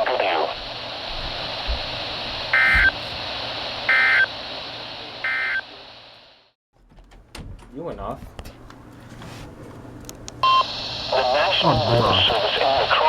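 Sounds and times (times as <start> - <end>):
radio static: 0.0 - 6.6, 10.5 - 13.0.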